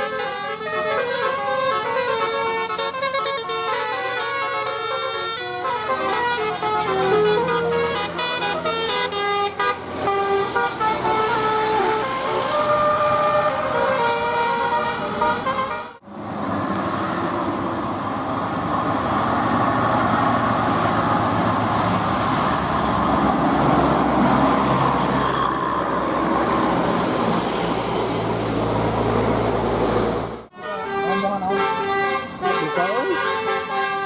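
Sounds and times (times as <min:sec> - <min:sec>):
multi-tone bus horn tune: 0:00.0 - 0:16.0, 0:30.5 - 0:34.0
bus engine: 0:00.0 - 0:34.0
road traffic: 0:00.0 - 0:34.0.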